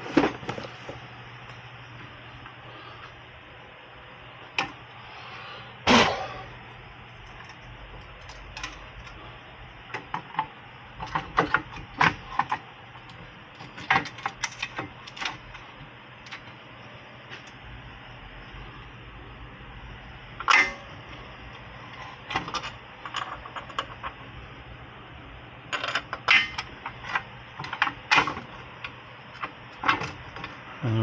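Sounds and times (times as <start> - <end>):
metal parts clicking and clinking: 7.2 - 9.2, 9.9 - 15.6, 20.4 - 20.8, 22.0 - 24.2, 25.7 - 28.5.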